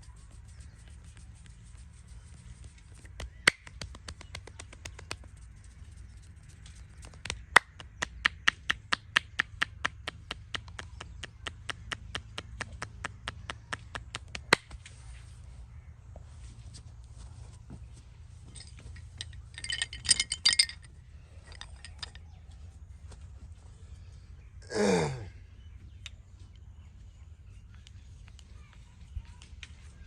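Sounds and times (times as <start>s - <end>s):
hands slapping in massage: 2.8s - 5.5s, 6.9s - 14.9s.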